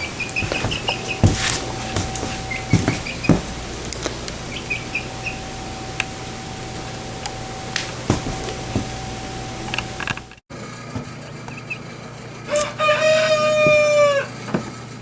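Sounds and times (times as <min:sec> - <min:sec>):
knocks: 0:00.0 - 0:03.7, 0:07.8 - 0:09.1
chickens chirping: 0:00.0 - 0:09.8
steady hum: 0:00.0 - 0:10.4.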